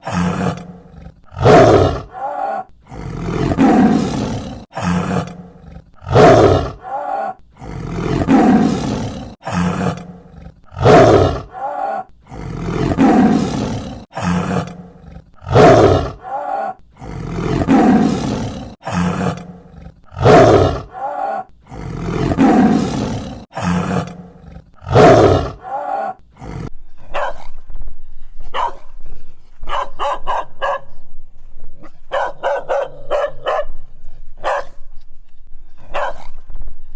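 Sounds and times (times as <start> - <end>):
tiger roaring: 0.0 - 26.8.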